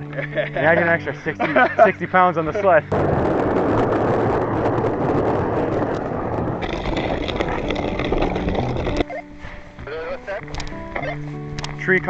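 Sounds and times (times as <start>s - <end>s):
sled scraping over rough trail: 0.2s - 12.0s.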